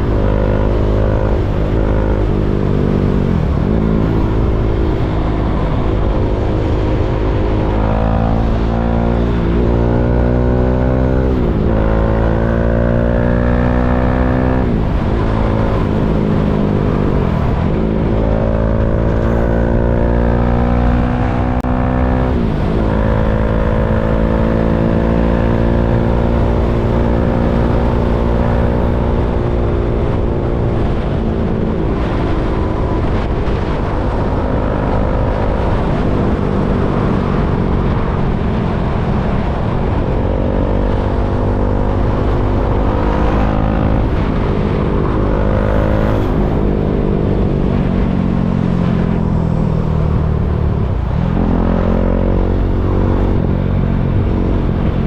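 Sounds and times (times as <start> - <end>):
motorcycle engine accelerating: 0.0 - 55.0.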